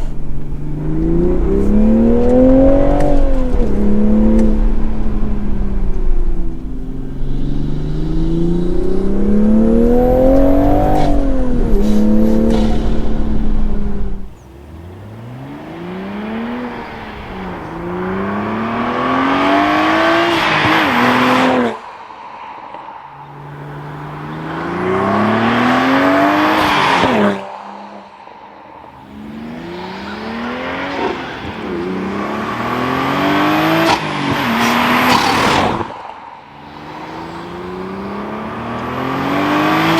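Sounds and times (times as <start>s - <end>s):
heavy low rumble: 0.0s - 14.8s
car engine revving through gears: 0.0s - 21.8s, 23.4s - 27.6s, 29.0s - 35.9s, 36.6s - 39.9s
intake and turbo rush: 0.0s - 39.9s.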